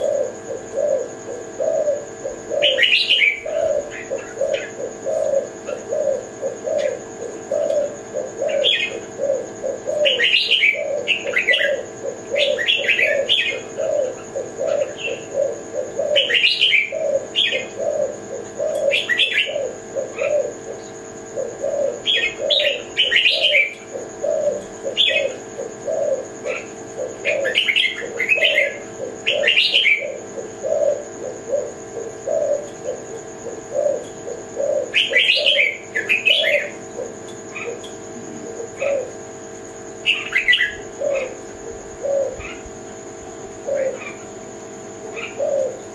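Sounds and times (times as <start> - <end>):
birds chirping: 0.0 - 45.9
dove cooing: 0.0 - 45.9.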